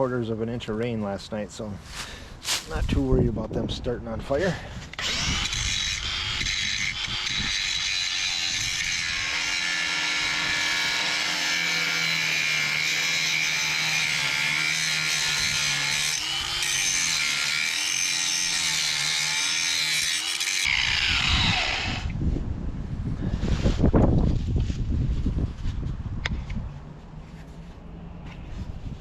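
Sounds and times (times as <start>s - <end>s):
wind buffeting microphone: 2.3s - 7.8s, 20.7s - 27.2s, 27.9s - 29.0s
angle grinder on metal: 4.9s - 22.2s.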